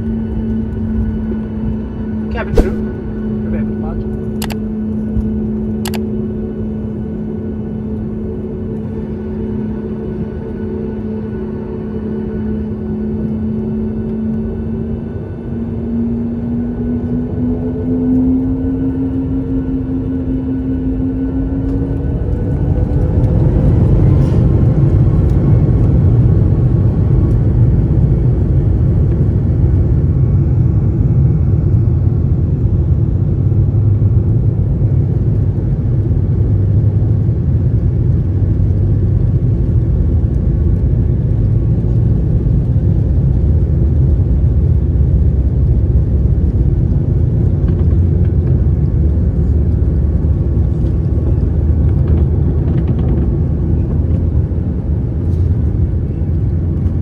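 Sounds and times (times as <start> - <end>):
jet engines rumbling: 0.0 - 5.8, 20.6 - 57.0.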